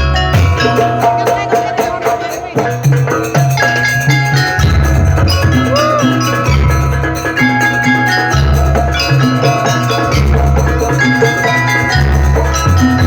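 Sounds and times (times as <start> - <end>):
deep bass: 0.0 - 1.6, 4.4 - 13.0
hand drums played fast: 0.0 - 13.0
held melodic tones: 0.0 - 13.0.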